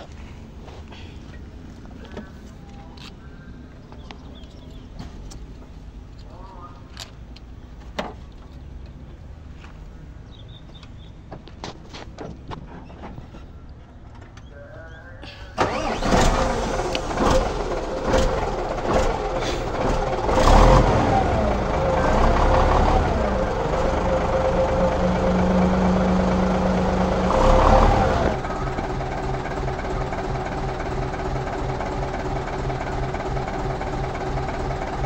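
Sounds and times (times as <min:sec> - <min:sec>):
diesel truck engine revving: 0:15.6 - 0:35.0.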